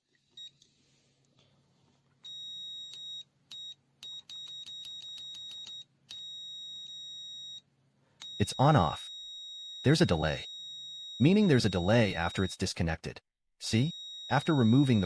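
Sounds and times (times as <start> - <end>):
multimeter continuity beeping: 2.2 - 7.6, 8.2 - 12.7, 13.6 - 15.0.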